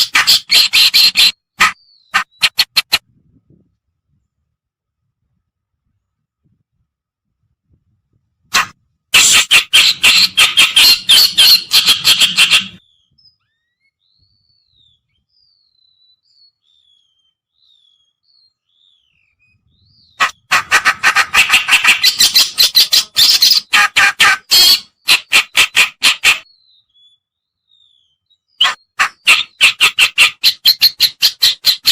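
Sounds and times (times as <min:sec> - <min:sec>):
bird chattering: 0:00.0 - 0:03.0, 0:08.6 - 0:12.8, 0:20.2 - 0:26.5, 0:28.6 - 0:31.9.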